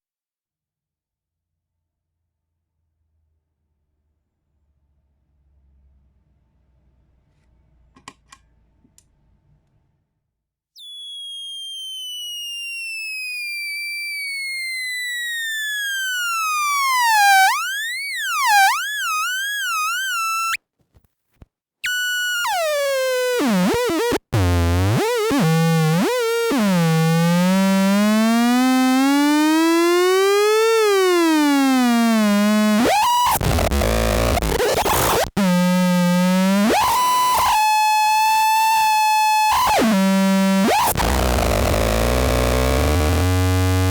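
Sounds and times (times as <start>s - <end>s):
buzzy synth tone: 14.2s - 20.6s, 21.8s - 43.9s
harsh synth noise: 15.2s - 20.6s, 21.8s - 43.9s.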